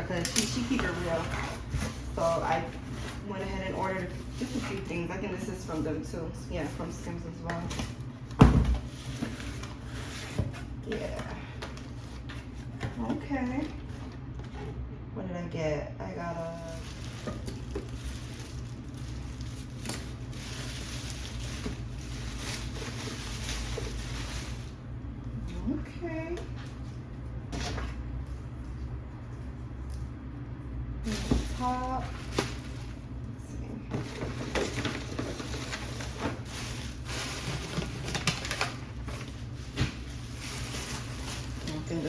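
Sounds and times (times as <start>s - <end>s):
packaging rustling and crinkling: 7.6s - 14.6s, 16.5s - 24.9s, 31.0s - 33.3s, 33.9s - 42.0s.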